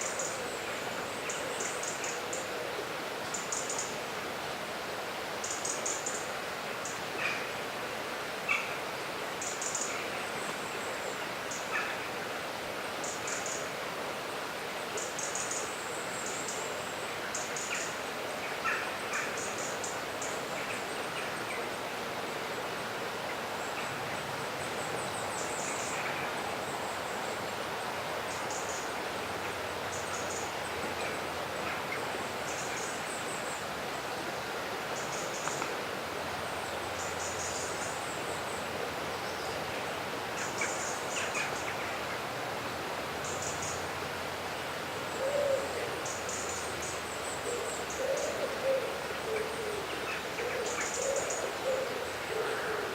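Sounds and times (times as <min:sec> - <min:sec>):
river water flowing: 0:00.0 - 0:52.9.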